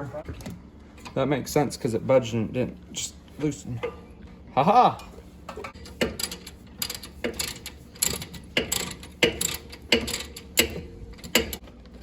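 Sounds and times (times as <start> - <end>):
ratchet wrench clicking: 6.0 - 11.6.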